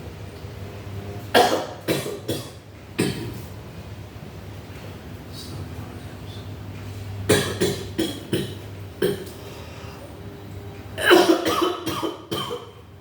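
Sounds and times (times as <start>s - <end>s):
man coughing: 11.0s - 12.8s.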